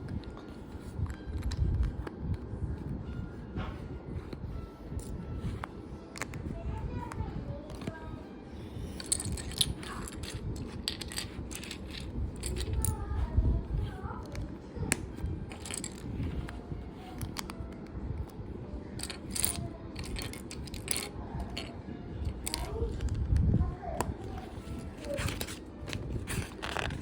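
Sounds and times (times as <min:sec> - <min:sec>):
plastic bricks clicking and clattering: 0:09.0 - 0:13.0, 0:15.5 - 0:17.6, 0:19.0 - 0:21.7, 0:25.2 - 0:27.0.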